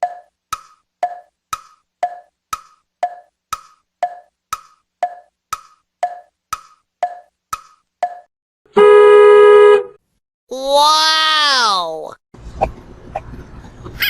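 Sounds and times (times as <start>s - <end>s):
wood-block tick-tock clicks: 0.0s - 8.3s.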